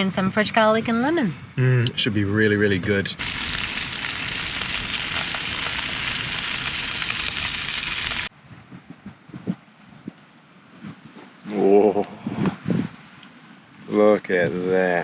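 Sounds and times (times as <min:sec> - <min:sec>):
meat sizzling in a frying pan: 0:03.2 - 0:08.3.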